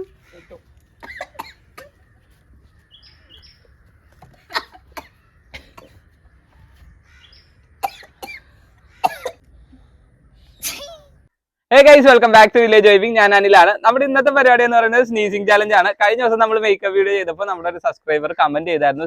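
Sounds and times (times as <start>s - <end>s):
person coughing: 0.5s - 2.0s, 4.5s - 6.0s, 7.8s - 9.4s.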